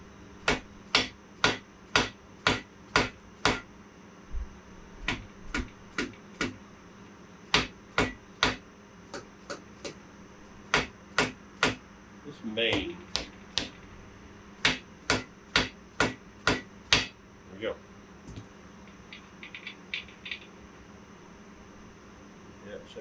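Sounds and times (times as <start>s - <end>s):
hammer striking metal: 0.5s - 3.7s, 10.7s - 11.8s, 14.6s - 17.2s.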